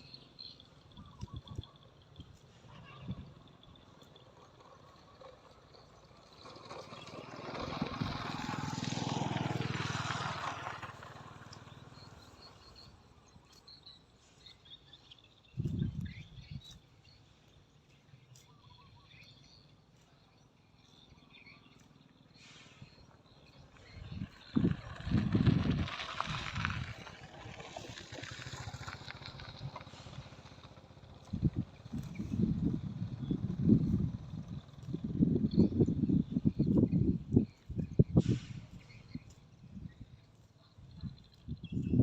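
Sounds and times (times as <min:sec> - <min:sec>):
faint bird chirps: 0:00.0 - 0:07.2, 0:10.6 - 0:25.2
motorbike passing by: 0:02.1 - 0:13.3, 0:22.1 - 0:42.0.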